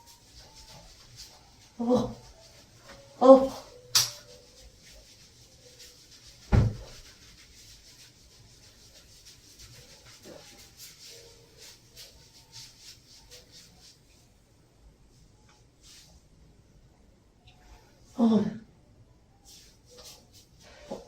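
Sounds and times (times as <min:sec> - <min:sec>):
faint rubbing and rustling: 0:00.0 - 0:16.4, 0:19.3 - 0:21.0
dull thump: 0:06.5 - 0:06.9.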